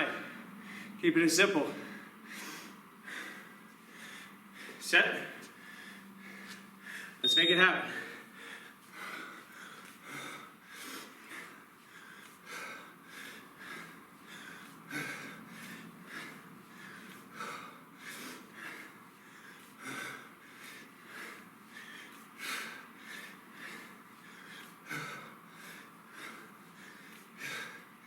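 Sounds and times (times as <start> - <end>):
man breathing hard: 0.0 - 1.0, 1.7 - 28.0.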